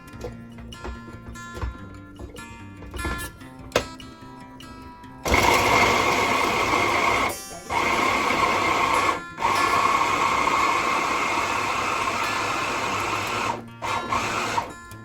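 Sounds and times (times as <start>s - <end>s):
food processor motor chopping: 5.2s - 15.0s.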